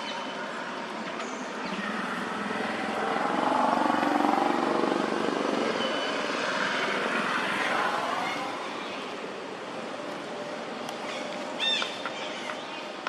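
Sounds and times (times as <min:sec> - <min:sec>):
vehicle engine passing by: 0:01.5 - 0:09.2.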